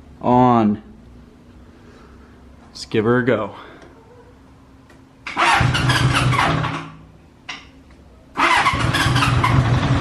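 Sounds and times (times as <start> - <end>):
motorcycle electric starter cranking: 5.3 - 7.0, 8.4 - 10.0
motorcycle engine running: 5.4 - 6.8, 8.4 - 10.0.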